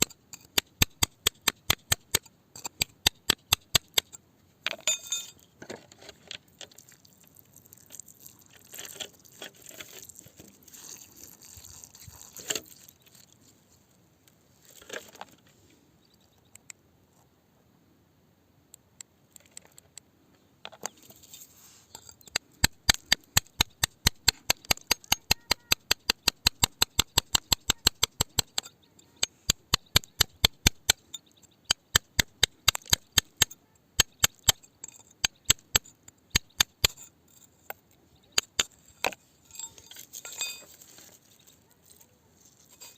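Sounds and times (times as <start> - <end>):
hand tool tapping on rock: 22.0 - 31.0, 31.7 - 37.0.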